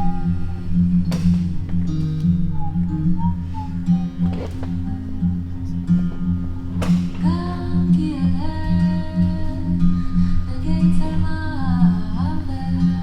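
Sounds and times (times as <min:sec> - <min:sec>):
low pulsing beat: 0:00.0 - 0:09.5
wordless sung voice: 0:00.0 - 0:13.0.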